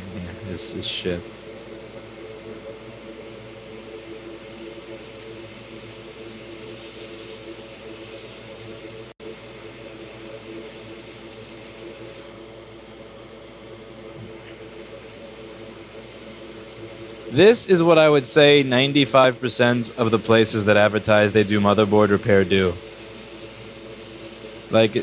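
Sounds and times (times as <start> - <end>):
extractor fan whirring: 0.0 - 25.0.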